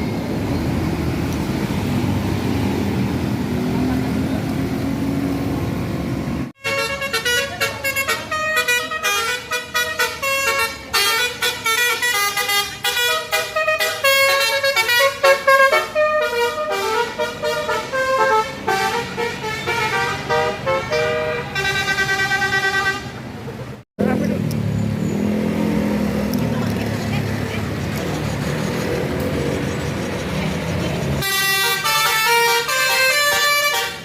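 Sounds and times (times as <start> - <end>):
engine and road noise: 0.0 - 34.0
musical bus horn melody: 6.6 - 23.3, 31.2 - 34.0.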